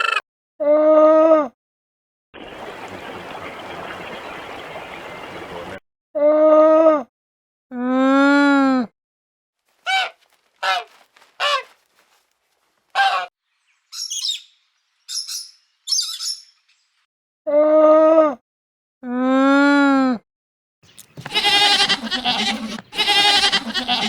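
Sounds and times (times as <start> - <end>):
animal bleat: 0.0 - 0.2, 21.2 - 24.0
harsh bird chirps and squawks: 13.0 - 16.9.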